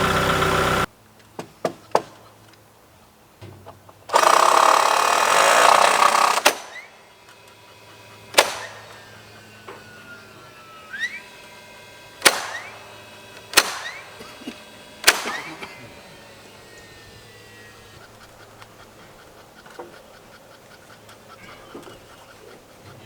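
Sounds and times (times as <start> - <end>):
power tool running: 0.0 - 0.9, 4.1 - 23.0.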